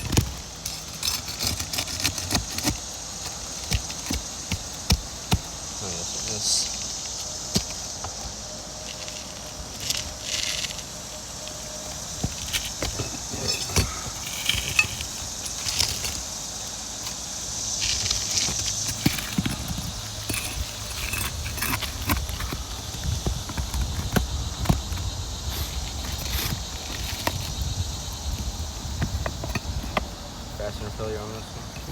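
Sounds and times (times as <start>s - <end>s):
taps and scraping on roof shingles: 0.0s - 5.7s, 6.6s - 10.9s, 11.6s - 30.2s
high insect drone: 0.0s - 31.9s.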